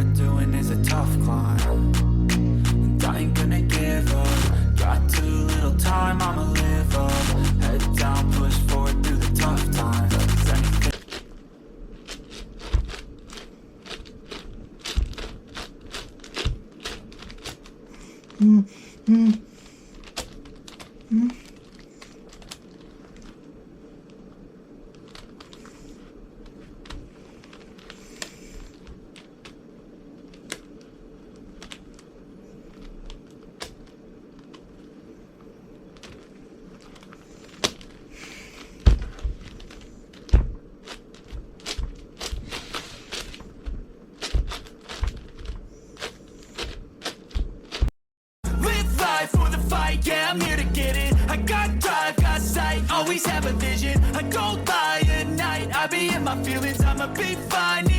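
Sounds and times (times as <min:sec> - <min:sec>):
puzzle cube plastic clicks: 0:19.9 - 0:23.5.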